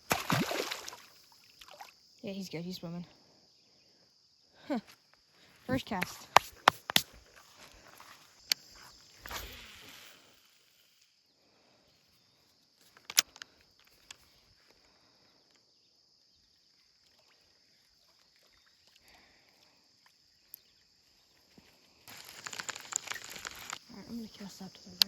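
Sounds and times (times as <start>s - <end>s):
sharp clicks: 5.9s - 7.2s, 12.9s - 14.2s, 22.1s - 23.9s
faint high hiss: 6.2s - 11.2s.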